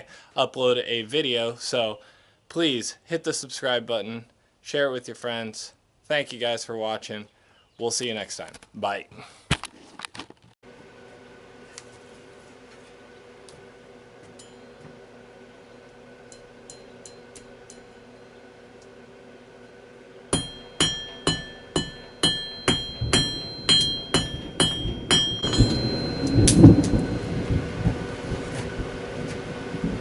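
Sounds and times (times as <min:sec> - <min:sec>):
hammer striking metal anvil: 0:14.4 - 0:14.9, 0:16.3 - 0:18.3, 0:20.3 - 0:27.5
deep rumbling boom: 0:24.4 - 0:30.0.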